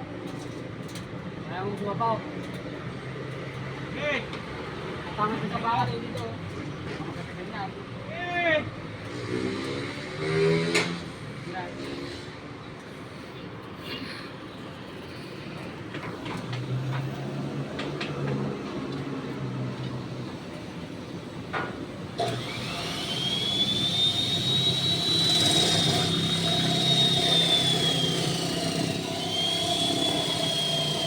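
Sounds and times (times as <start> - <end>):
power tool motor whining: 22.2 - 31.0.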